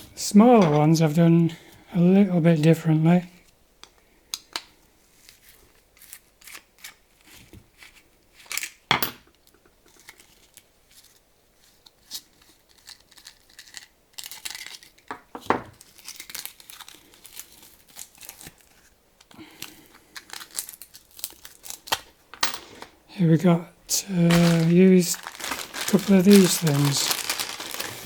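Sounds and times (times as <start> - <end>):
hands handling small parts: 19.2 - 23.0, 23.9 - 28.0.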